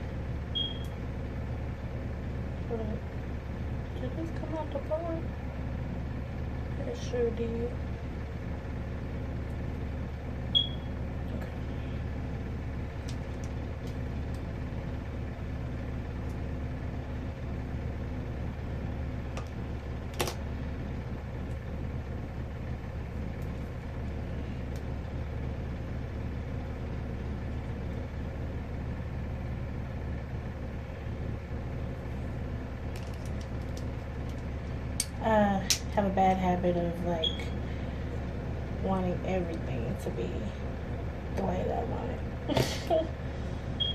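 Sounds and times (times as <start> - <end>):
low machine hum: 0.0 - 43.9
high-pitched beep: 0.6 - 0.9, 10.6 - 10.8.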